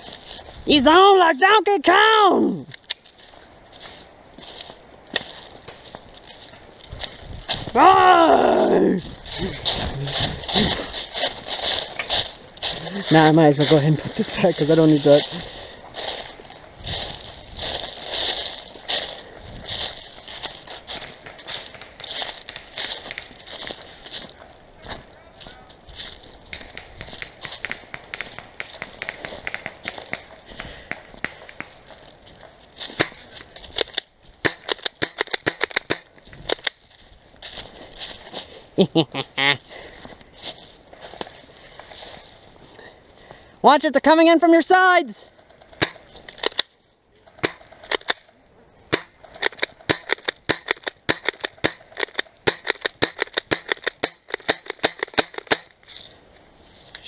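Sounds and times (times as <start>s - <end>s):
footsteps on dry forest litter: 0.0s - 1.8s, 2.7s - 57.0s
airsoft guns firing: 26.6s - 30.3s, 48.9s - 55.7s.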